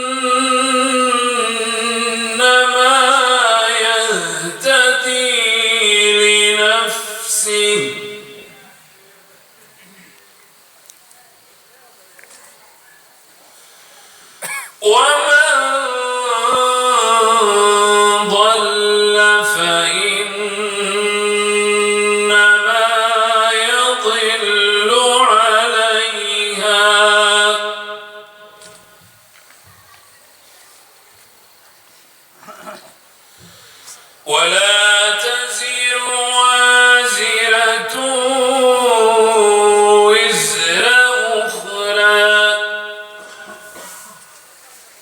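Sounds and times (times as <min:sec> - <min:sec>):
man chanting melodically: 0:00.0 - 0:09.0, 0:14.8 - 0:29.0, 0:34.2 - 0:44.3.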